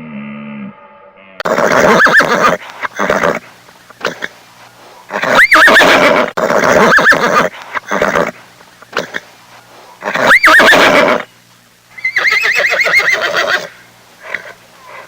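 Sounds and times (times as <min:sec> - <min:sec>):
horse neighing: 0:01.4 - 0:03.5, 0:05.1 - 0:08.4, 0:10.0 - 0:11.3, 0:12.0 - 0:15.0.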